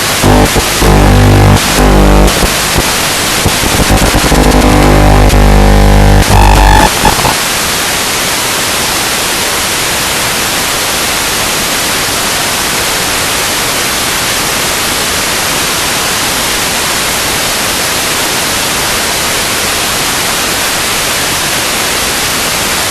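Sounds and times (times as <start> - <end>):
loud pitched tone: 0.0 - 7.4
steady static hiss: 0.0 - 22.9.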